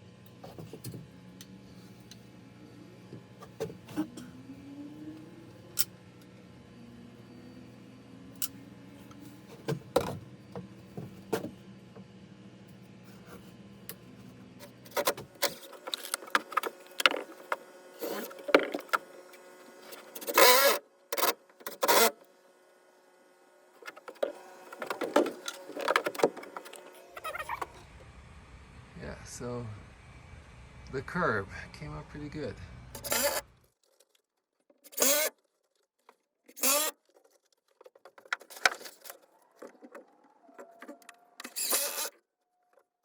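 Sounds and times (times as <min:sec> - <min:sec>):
small electric power tool: 0:14.0 - 0:22.4, 0:32.9 - 0:33.6, 0:34.8 - 0:35.4, 0:36.5 - 0:37.1, 0:41.0 - 0:42.2
steady low hum: 0:24.7 - 0:33.7.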